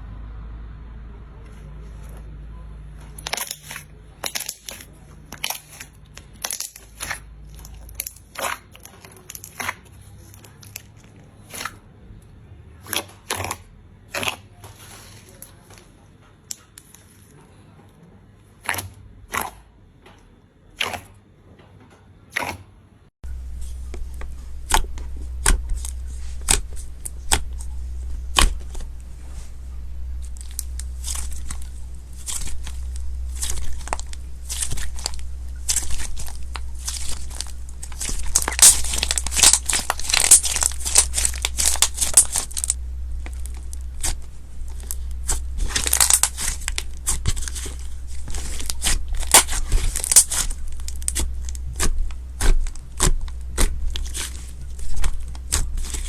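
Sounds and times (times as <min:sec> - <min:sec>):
low hum: 0:00.0 - 0:08.2, 0:23.2 - 0:56.0
slime crackling: 0:03.1 - 0:11.8, 0:12.8 - 0:15.9, 0:18.6 - 0:19.6, 0:20.8 - 0:21.2, 0:22.3 - 0:22.6, 0:23.3 - 0:56.0
slime squished by hand: 0:03.1 - 0:11.9, 0:12.8 - 0:15.9, 0:18.6 - 0:19.7, 0:20.8 - 0:21.2, 0:22.3 - 0:22.7, 0:23.3 - 0:56.0.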